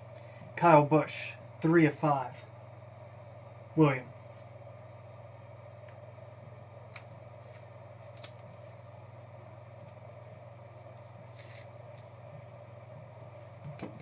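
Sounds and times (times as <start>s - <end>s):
low electrical hum: 0.0s - 14.0s
trading cards handled: 5.8s - 9.0s, 10.8s - 12.3s
card rustle: 5.9s - 9.0s, 10.8s - 12.3s.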